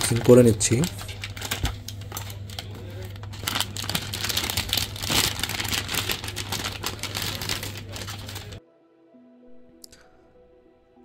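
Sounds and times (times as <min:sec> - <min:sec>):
packaging crinkling and rustling: 0:00.0 - 0:08.6.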